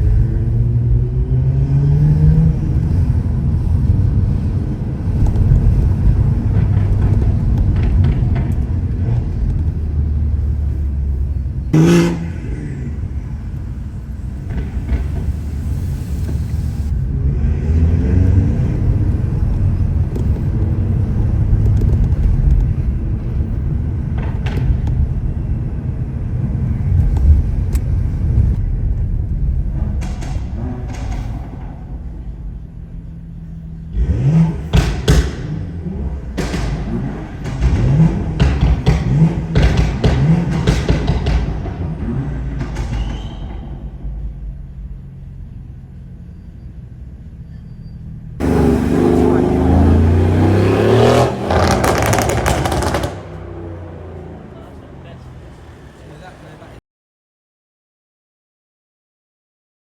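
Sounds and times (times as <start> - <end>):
car engine revving: 0.0 - 46.2, 48.4 - 56.7
sharp exhaust cracks: 2.1 - 17.2, 48.4 - 53.9.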